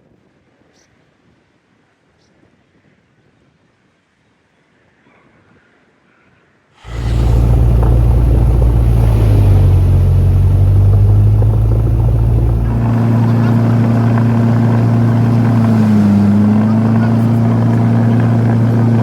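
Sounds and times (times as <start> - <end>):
propeller plane engine droning: 6.8 - 19.0.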